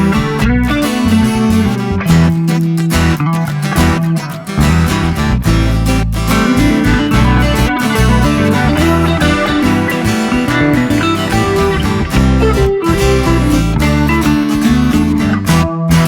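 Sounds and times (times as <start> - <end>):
bass line: 0.0 - 16.0
strummed guitar: 0.0 - 16.0.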